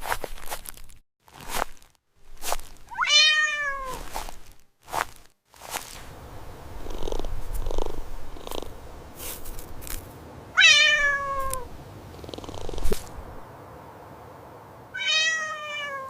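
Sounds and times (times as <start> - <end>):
cat meowing: 2.9 - 4.1, 10.6 - 11.7, 15.0 - 16.0
cat purring: 6.7 - 9.7, 11.5 - 13.4.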